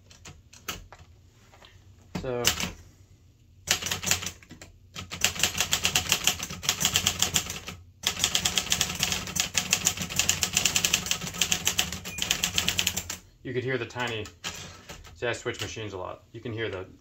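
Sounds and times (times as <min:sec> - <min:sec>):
manual typewriter typing: 0:00.0 - 0:00.9, 0:02.2 - 0:02.8, 0:03.7 - 0:13.2, 0:13.9 - 0:15.9.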